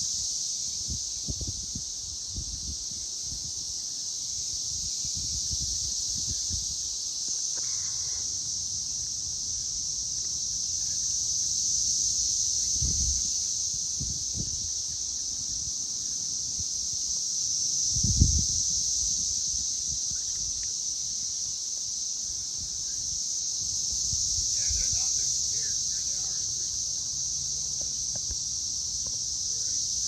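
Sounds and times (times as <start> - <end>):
cicadas droning: 0.0 - 30.0
wind rumble on microphone: 0.7 - 3.7, 4.6 - 6.8, 12.6 - 15.0, 17.9 - 20.6.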